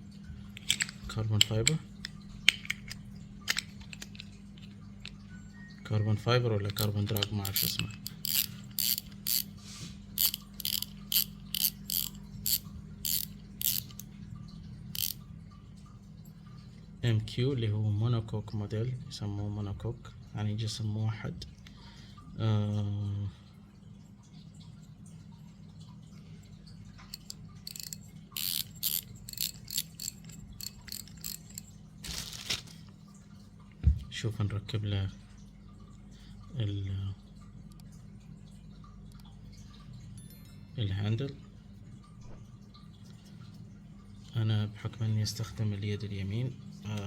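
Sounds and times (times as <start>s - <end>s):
fishing reel drag clicking: 6.8s - 9.5s, 10.2s - 14.0s, 15.0s - 15.2s, 27.1s - 31.7s.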